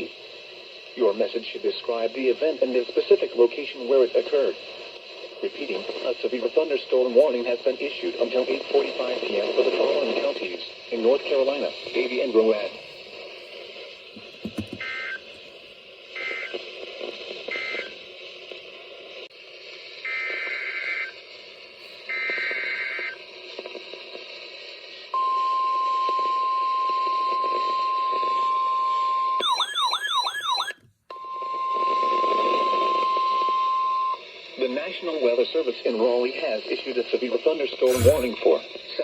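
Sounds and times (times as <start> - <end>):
radio channel hiss: 0.0 - 15.5, 34.6 - 38.4.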